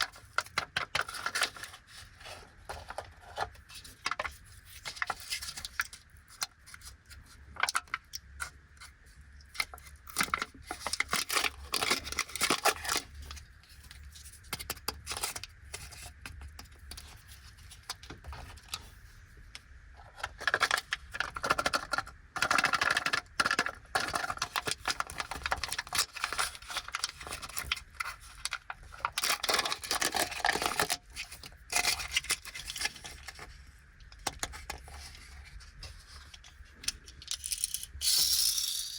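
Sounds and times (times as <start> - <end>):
plastic packaging crinkling and tearing: 0.0 - 8.2, 9.5 - 14.1, 20.2 - 37.2.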